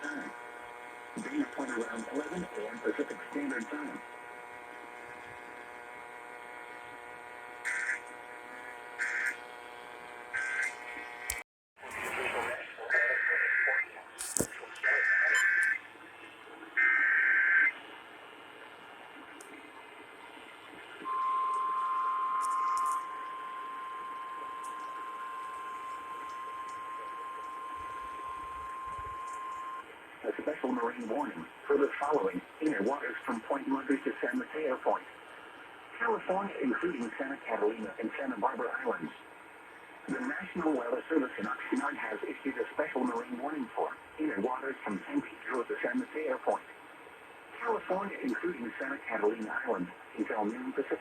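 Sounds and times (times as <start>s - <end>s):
short buzzing data bursts: 0.0s - 15.9s, 21.0s - 29.9s
steady radio hum: 0.0s - 51.0s
piercing warning alarm tone: 7.3s - 10.8s, 14.8s - 15.8s, 16.8s - 17.8s, 21.0s - 29.9s.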